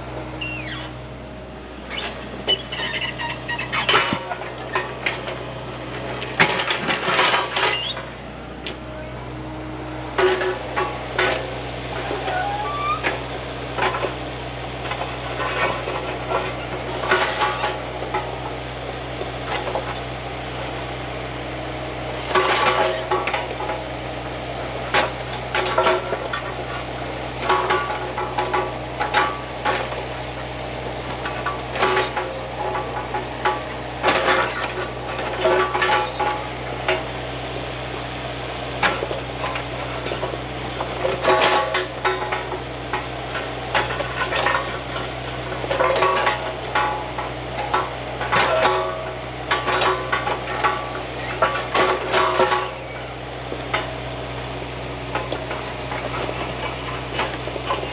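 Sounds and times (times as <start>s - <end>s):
excavator engine running: 0.0s - 57.9s.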